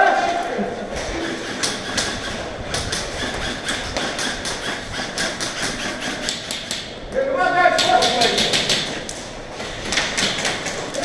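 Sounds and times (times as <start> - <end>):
airsoft guns firing: 7.8 - 11.0.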